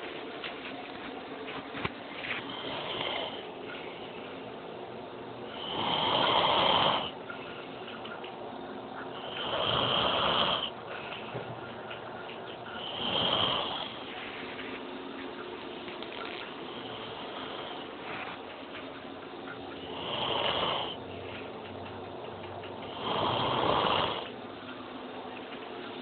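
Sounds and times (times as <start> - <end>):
rasping snoring with whistling: 5.6 - 7.1, 9.2 - 10.7, 12.8 - 14.0, 19.9 - 21.0, 22.9 - 24.2.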